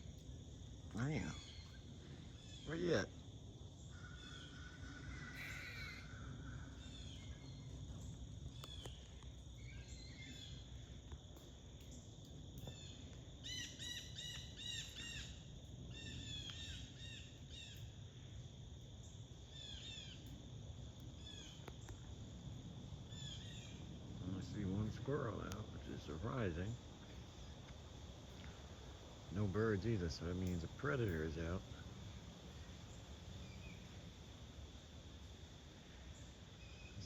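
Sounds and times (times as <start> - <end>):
squirrels barking alarm calls: 3.9 - 7.5, 12.7 - 17.8.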